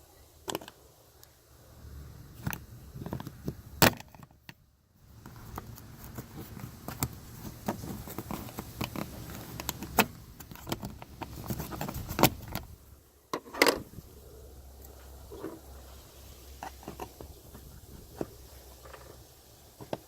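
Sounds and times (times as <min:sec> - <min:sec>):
screwdriver scraping plastic: 0:05.2 - 0:12.6.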